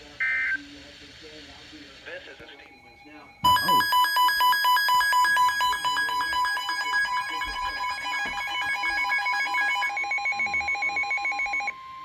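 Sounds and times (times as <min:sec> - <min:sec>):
two-pitch warning warble: 0:02.9 - 0:11.6.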